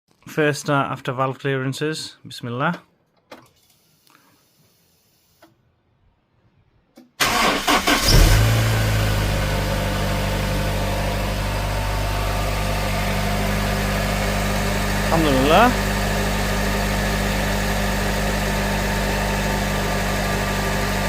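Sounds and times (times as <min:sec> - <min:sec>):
starter cranking engine: 0:07.2 - 0:09.3
car engine idling: 0:07.2 - 0:21.0.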